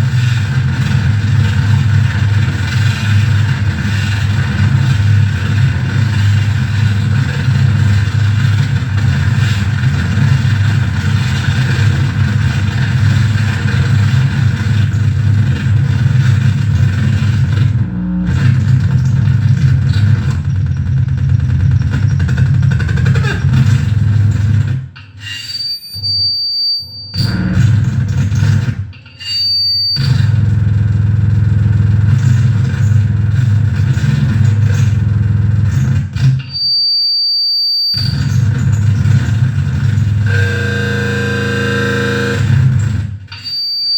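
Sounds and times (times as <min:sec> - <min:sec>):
low bass rumble: 0:00.0 - 0:24.7, 0:30.0 - 0:35.7
harsh noise drone: 0:00.0 - 0:25.0, 0:27.2 - 0:36.3, 0:38.0 - 0:43.9
high feedback whistle: 0:25.2 - 0:27.4, 0:29.2 - 0:30.2, 0:36.5 - 0:38.4, 0:43.3 - 0:43.9.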